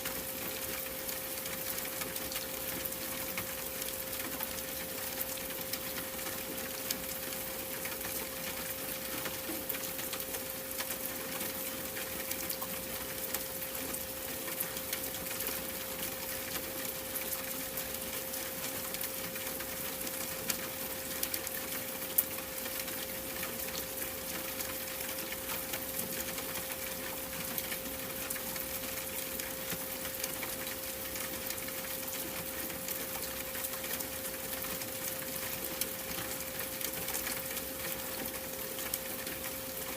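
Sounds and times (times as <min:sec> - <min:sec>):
rain hiss: 0:00.0 - 0:39.9.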